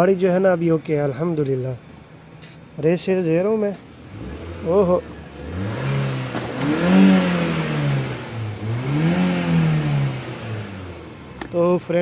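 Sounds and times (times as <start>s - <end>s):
car engine revving: 3.9s - 11.6s.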